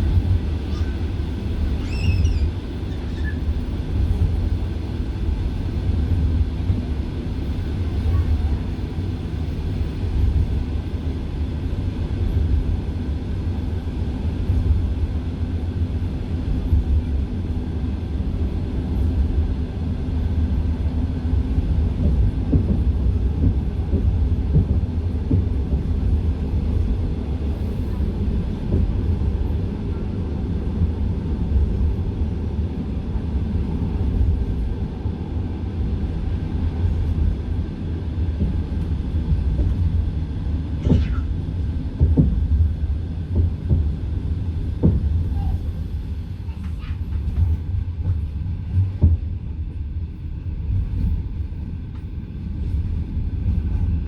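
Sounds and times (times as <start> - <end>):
train wheels rumbling on track: 0.0 - 54.0
light knocks from train wheels: 22.0 - 25.6, 44.7 - 45.3.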